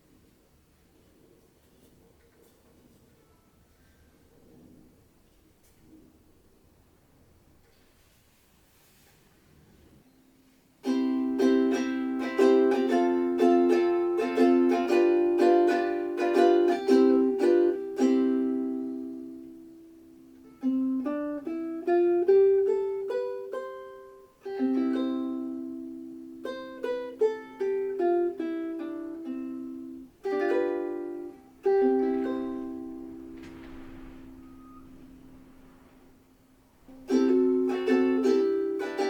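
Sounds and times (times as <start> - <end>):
ukulele chords and melody: 10.8 - 39.0.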